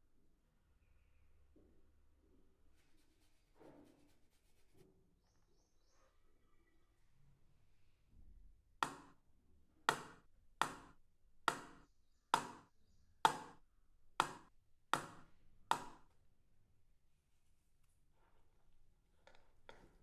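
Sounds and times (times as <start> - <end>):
knife chopping on cutting board: 8.8 - 9.1, 9.9 - 10.9, 11.5 - 11.8, 12.4 - 12.7, 13.3 - 13.6, 14.2 - 16.0.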